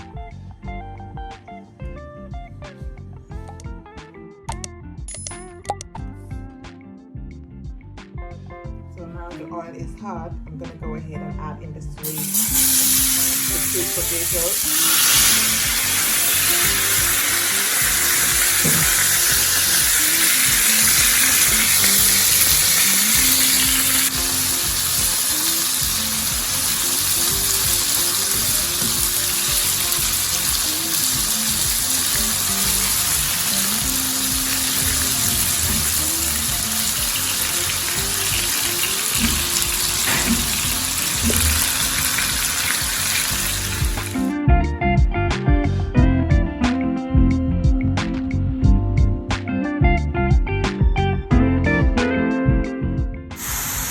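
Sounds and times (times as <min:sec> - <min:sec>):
food frying in hot oil: 0:12.0 - 0:44.3, 0:53.4 - 0:53.9.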